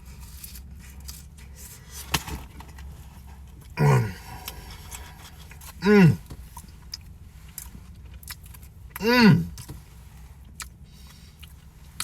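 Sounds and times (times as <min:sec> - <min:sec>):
man humming mmm: 0:03.8 - 0:04.4, 0:05.8 - 0:06.2, 0:09.0 - 0:09.6.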